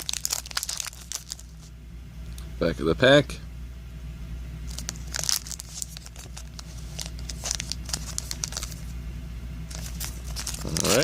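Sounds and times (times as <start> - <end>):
foil wrapper crinkling and tearing: 0.0 - 1.7, 4.7 - 8.9, 9.7 - 11.0.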